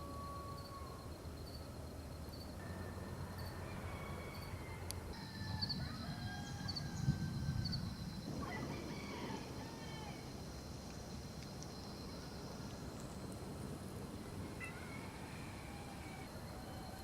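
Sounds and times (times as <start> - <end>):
high insect trill: 0.0 - 17.0.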